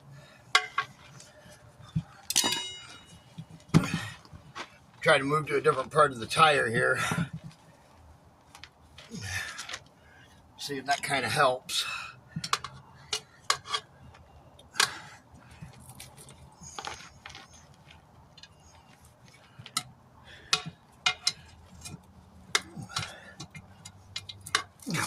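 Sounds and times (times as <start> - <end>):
faint steady hum: 0.0 - 25.0
pry bars clinking on metal rim: 2.3 - 3.3, 20.5 - 25.0.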